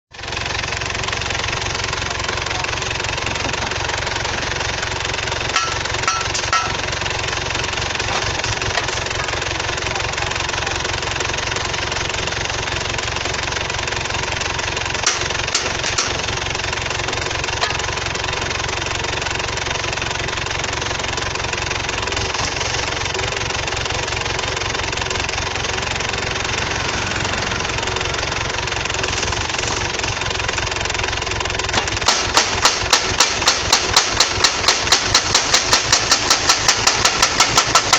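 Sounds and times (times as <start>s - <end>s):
pile driver engine running: 0.1s - 37.9s
pile driver hammer striking: 5.5s - 6.9s, 15.0s - 16.3s, 31.7s - 37.9s.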